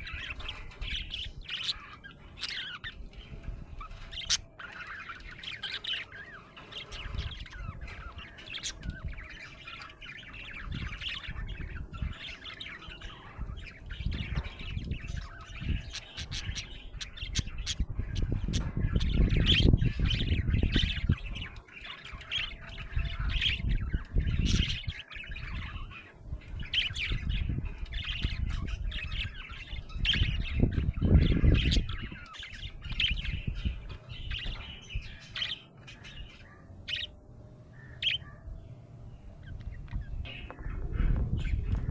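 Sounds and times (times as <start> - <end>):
low rumble: 39.0 - 41.9.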